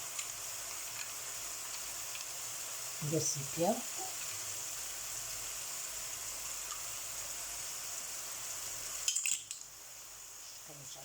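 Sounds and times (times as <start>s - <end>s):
crackling of frying: 0.0s - 11.0s
food sizzling in a pan: 0.0s - 11.0s.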